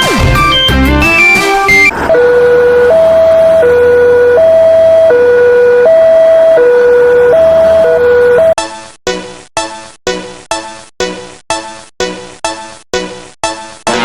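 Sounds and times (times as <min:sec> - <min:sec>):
music notes: 0:00.0 - 0:03.6
two-tone siren: 0:00.0 - 0:08.6.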